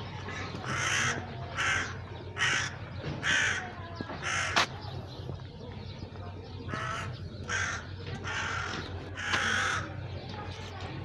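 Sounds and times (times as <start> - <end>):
crow cawing: 0.3 - 4.6, 6.7 - 10.0.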